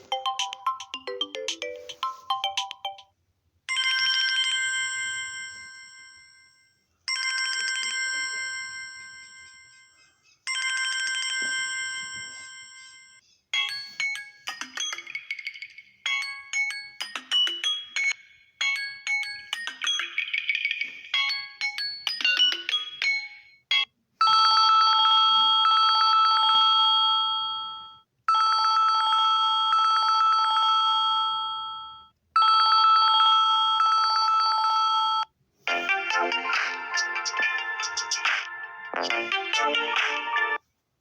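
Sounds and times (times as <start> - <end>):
ringtone melody of quick notes: 0.0 - 4.2, 13.6 - 26.9, 32.4 - 40.6.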